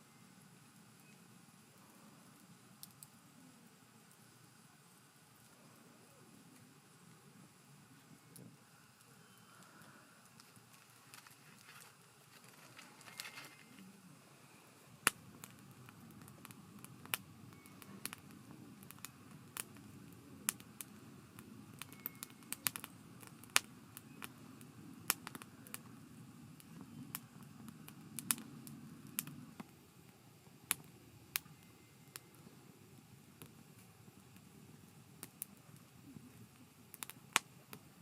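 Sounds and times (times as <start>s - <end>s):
campfire crackling and popping: 0.7s - 4.4s, 6.6s - 14.2s, 14.8s - 38.0s.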